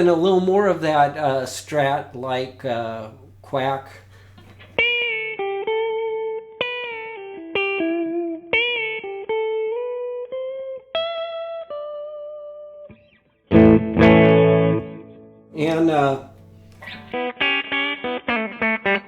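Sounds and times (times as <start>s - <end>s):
clean electric guitar melody: 4.4s - 19.0s.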